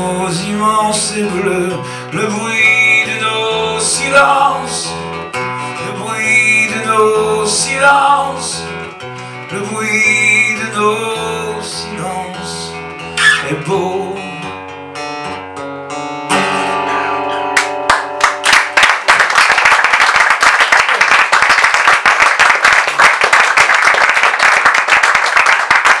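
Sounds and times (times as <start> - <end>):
acoustic guitar chords: 0.0 - 19.1
audience applause: 17.6 - 26.0.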